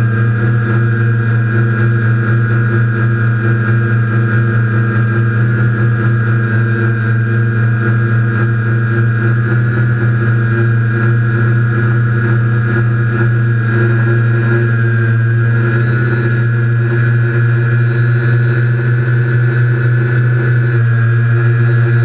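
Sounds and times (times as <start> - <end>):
quadcopter motors humming: 0.0 - 22.0.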